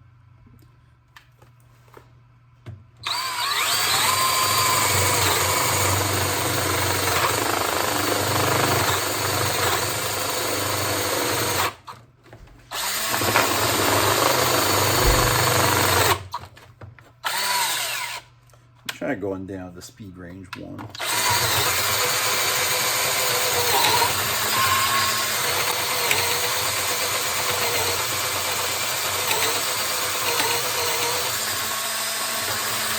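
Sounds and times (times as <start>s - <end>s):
cordless drill boring into wood: 3.0s - 11.8s, 12.7s - 16.3s, 17.2s - 18.2s, 21.0s - 32.9s.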